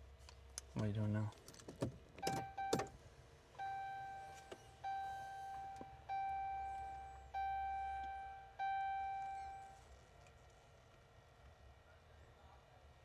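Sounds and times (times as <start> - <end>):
dashboard warning chime: 2.2 - 2.9, 3.6 - 9.8.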